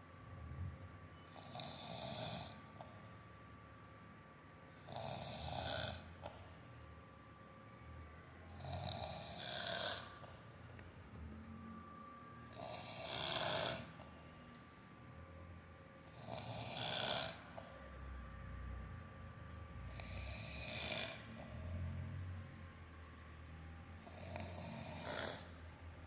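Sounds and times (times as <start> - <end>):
person snoring: 4.8 - 6.1, 8.6 - 10.2, 12.5 - 14.0, 16.2 - 17.6, 19.9 - 21.9, 24.1 - 25.6.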